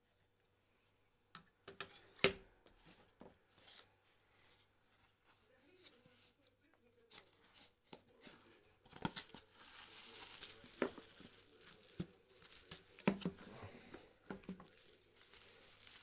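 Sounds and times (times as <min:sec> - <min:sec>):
soft rustling hiss: 0:09.1 - 0:16.0.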